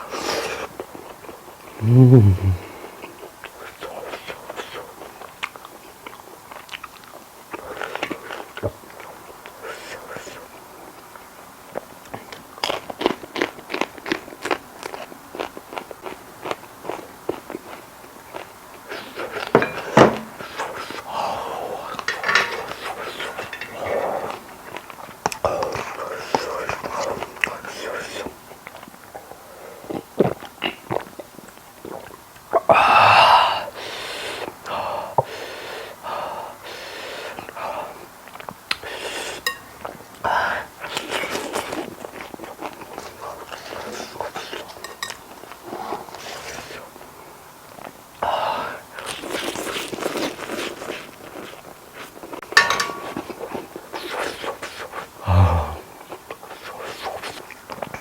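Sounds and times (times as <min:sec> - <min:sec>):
person chewing food: 0:00.6 - 0:09.4, 0:11.7 - 0:32.7, 0:38.2 - 0:40.2, 0:40.8 - 0:46.8, 0:49.0 - 0:58.0
person humming: 0:01.8 - 0:02.8, 0:55.2 - 0:55.9
wheezy mouth breathing: 0:01.8 - 0:03.0, 0:38.7 - 0:39.5, 0:54.1 - 0:56.0
utensils clinking on dishes: 0:19.5 - 0:20.7, 0:22.0 - 0:24.4, 0:39.4 - 0:39.8, 0:44.8 - 0:45.2, 0:52.4 - 0:53.5.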